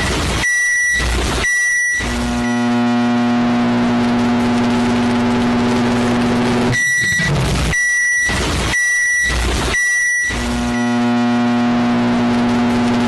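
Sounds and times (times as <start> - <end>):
microwave oven humming: 0.0 - 13.0
short high beeps: 6.8 - 11.0.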